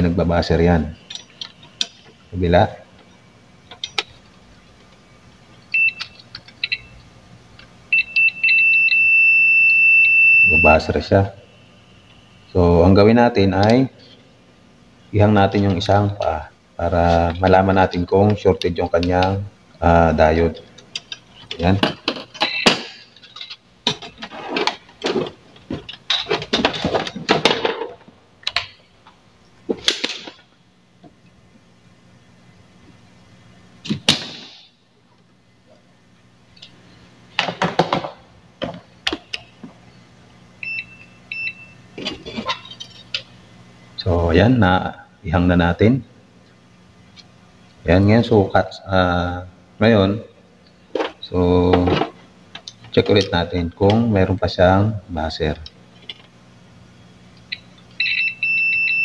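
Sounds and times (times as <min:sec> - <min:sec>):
multimeter continuity buzzer beeping: 0:05.7 - 0:07.0, 0:07.9 - 0:12.6, 0:40.6 - 0:41.8, 0:57.5 - 0:59.0.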